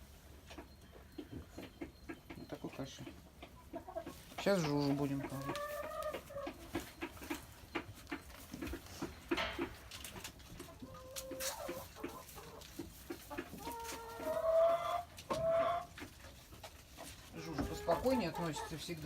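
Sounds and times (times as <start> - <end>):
hens clucking: 0.0 - 19.0
hens drawn-out calls: 3.6 - 7.6, 10.7 - 16.1, 17.3 - 19.0.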